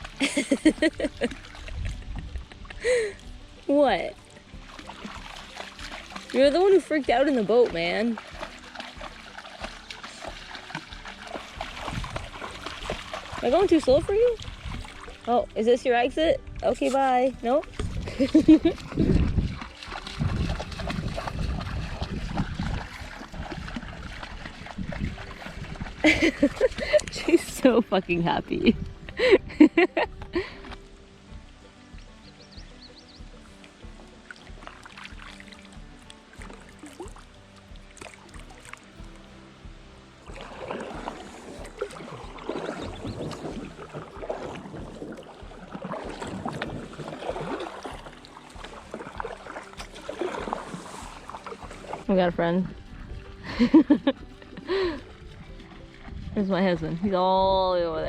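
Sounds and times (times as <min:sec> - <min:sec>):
water lapping around kayak: 0:00.0 - 0:58.0
wind rumble on microphone: 0:00.6 - 0:03.1, 0:11.5 - 0:31.4, 0:40.5 - 0:48.1, 0:50.6 - 0:58.0.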